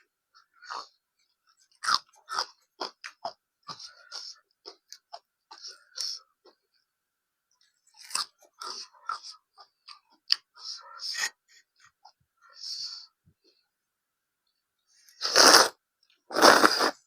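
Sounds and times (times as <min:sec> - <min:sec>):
person chewing and crunching food: 0:00.4 - 0:06.6, 0:07.6 - 0:11.2.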